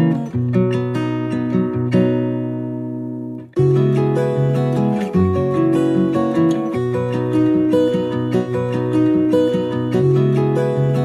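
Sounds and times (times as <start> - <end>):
plucked acoustic guitar music: 0.0 - 11.0.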